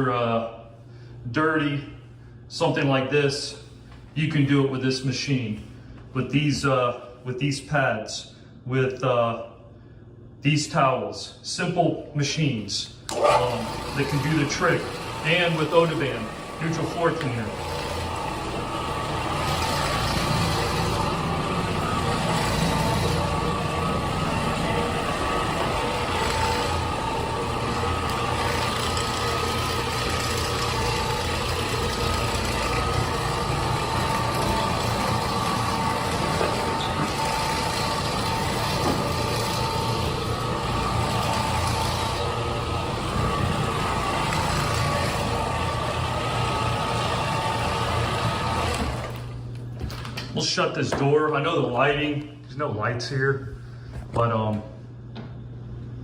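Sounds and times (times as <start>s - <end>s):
floor machine motor humming: 13.1s - 52.8s.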